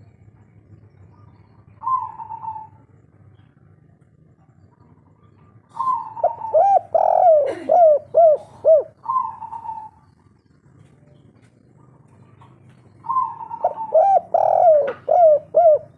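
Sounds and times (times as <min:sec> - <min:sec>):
dove cooing: 0:01.2 - 0:02.9, 0:04.9 - 0:10.2, 0:11.8 - 0:15.9.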